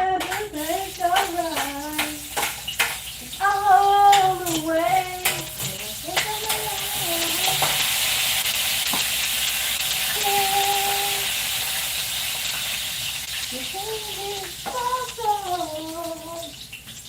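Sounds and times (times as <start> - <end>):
food sizzling in a frying pan: 0.0 - 17.0
woman humming: 3.4 - 7.7, 10.2 - 11.3, 13.6 - 16.5.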